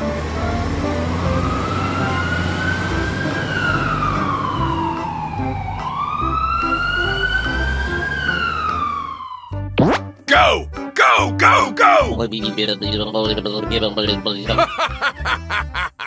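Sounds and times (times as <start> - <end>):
wailing fire truck siren: 0.0 - 9.8
low background music: 0.0 - 16.0.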